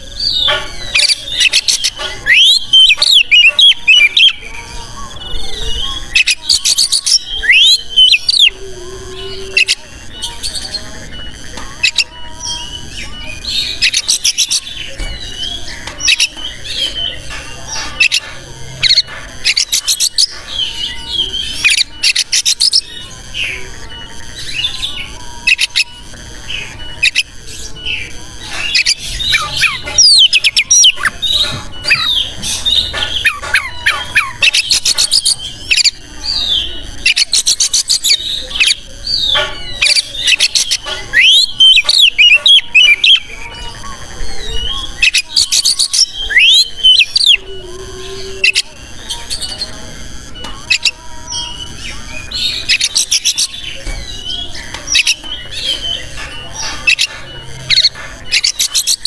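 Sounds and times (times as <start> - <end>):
magpie-robin singing: 0.0 - 49.8, 50.4 - 59.0.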